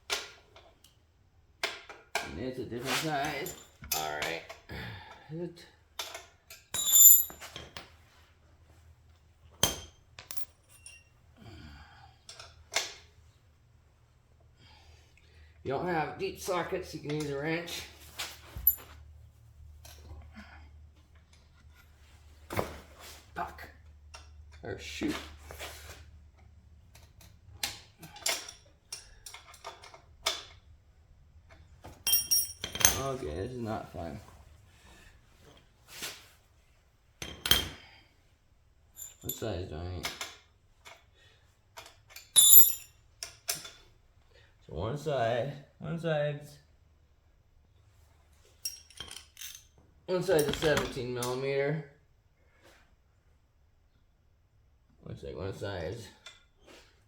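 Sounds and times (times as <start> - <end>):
metal hand tools clinking: 6.8 - 7.4, 10.3 - 11.0, 18.6 - 18.9, 32.1 - 33.0, 39.0 - 39.4, 42.4 - 42.9, 48.6 - 49.7
metallic clicks of hand tools: 10.3 - 11.0.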